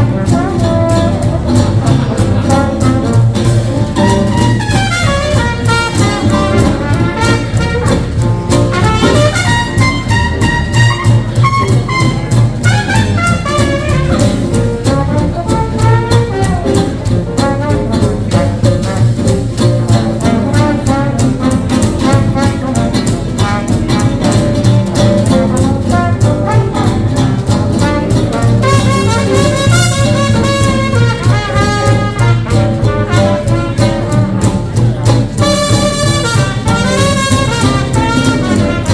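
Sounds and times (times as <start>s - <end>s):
brass horn lines: 0.0s - 16.8s, 27.8s - 38.9s
swing band rhythm section: 0.0s - 38.9s.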